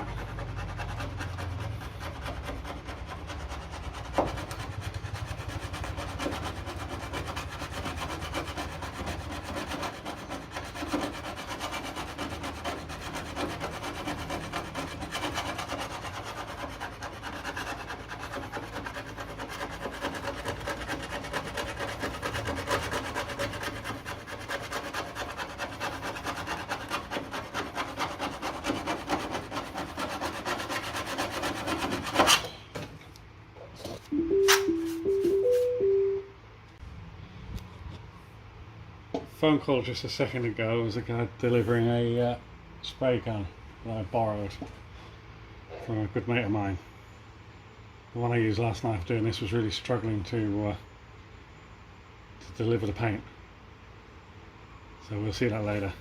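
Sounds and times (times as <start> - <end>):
file scraping metal: 0.0 - 32.6.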